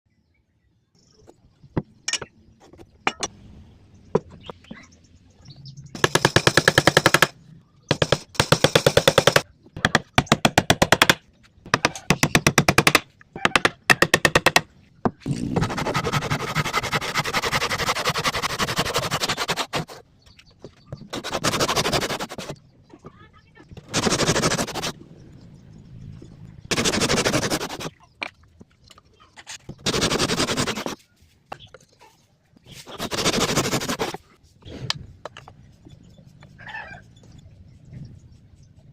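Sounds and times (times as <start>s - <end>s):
hand saw cutting wood: 15.4s - 20.0s, 21.1s - 22.6s, 23.8s - 24.9s, 26.7s - 27.9s, 29.8s - 31.0s, 32.9s - 34.2s.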